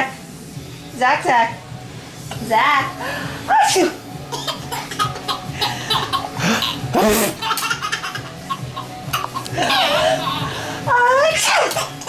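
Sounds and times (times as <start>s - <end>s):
baby laughing: 4.3s - 10.6s, 11.4s - 12.0s
mock sneeze: 6.4s - 7.4s.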